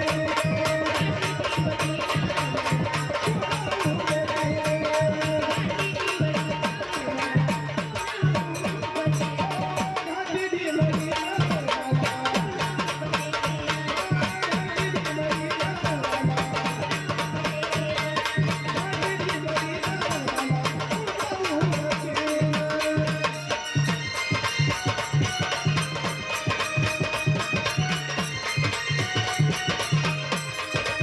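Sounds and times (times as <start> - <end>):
fast hand-drum rhythm: 0.0 - 31.0.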